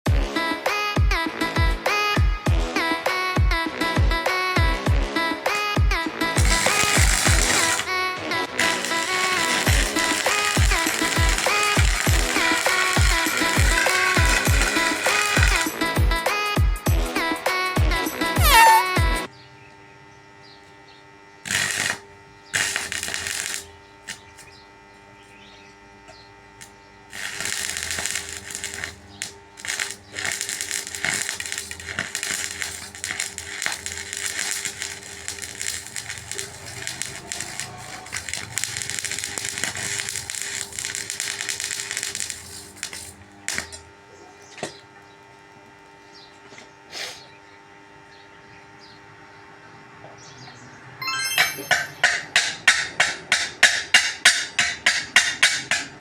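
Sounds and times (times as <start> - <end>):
arc welding crackle: 5.5 - 16.6, 18.2 - 19.3, 20.2 - 46.2, 51.2 - 56.0
arc strikes: 6.4 - 16.0, 26.6 - 43.8, 51.0 - 56.0
faint steady hum: 18.8 - 50.4.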